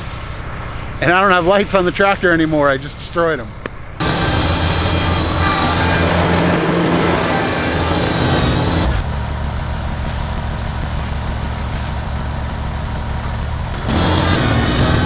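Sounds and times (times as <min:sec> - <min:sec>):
tractor diesel engine running: 0:04.0 - 0:15.0.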